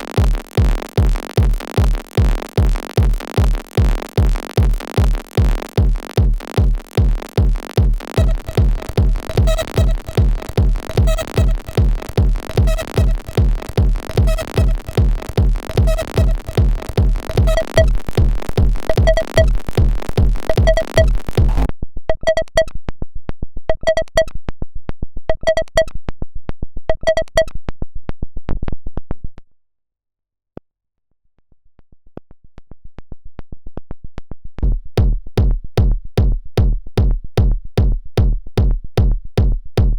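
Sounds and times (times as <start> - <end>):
fast hi-hats: 0.0 - 21.7
kick drum and bass: 0.0 - 21.7, 34.6 - 39.9
repeating synth blip: 6.3 - 22.7.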